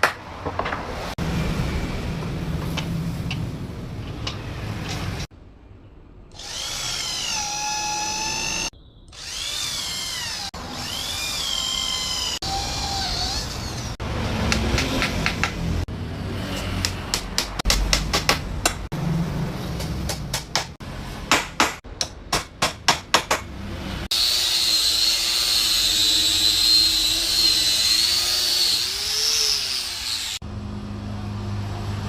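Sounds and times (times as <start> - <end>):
electric drill whining: 6.4 - 14.0
hammer striking wood: 14.4 - 15.6, 16.8 - 18.9, 19.8 - 23.5.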